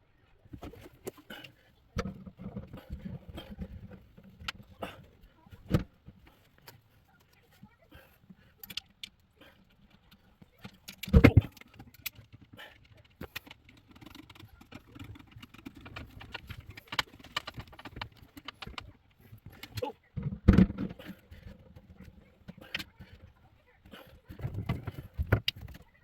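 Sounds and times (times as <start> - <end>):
parts clicking and knocking: 0.5 - 26.0.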